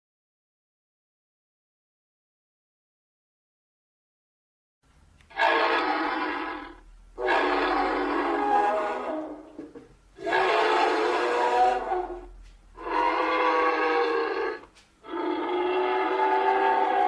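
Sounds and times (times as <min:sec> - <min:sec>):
horn-like creature calls: 0:05.3 - 0:09.6, 0:10.2 - 0:17.0.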